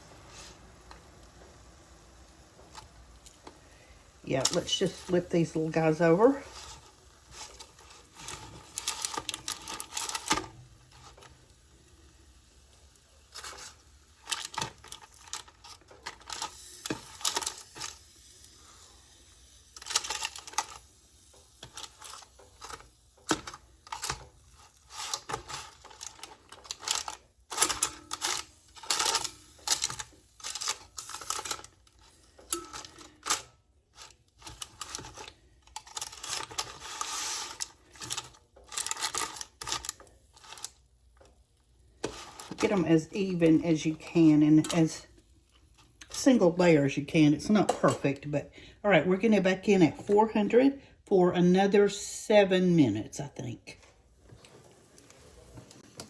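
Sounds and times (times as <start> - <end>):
utensil clicking on metal basket: 24.9 - 40.8.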